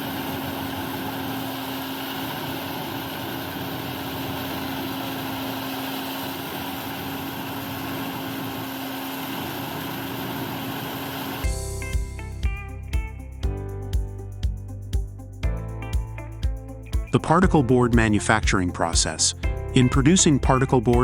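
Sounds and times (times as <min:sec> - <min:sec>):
wood chipper running: 0:00.0 - 0:11.5.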